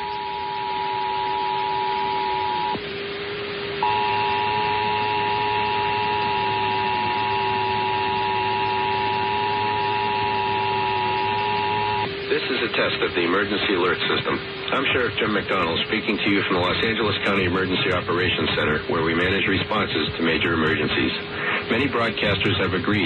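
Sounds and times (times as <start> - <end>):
faint high whine: 0.0 - 23.0
low steady hum: 0.0 - 23.0
two-tone alert signal: 3.8 - 12.1.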